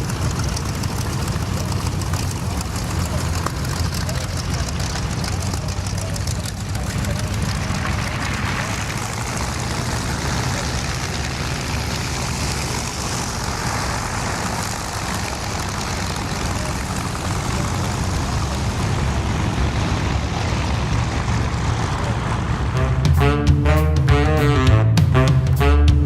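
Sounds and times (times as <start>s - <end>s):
broad rushing noise: 0.0s - 23.4s
aircraft engine rumbling: 0.0s - 26.0s.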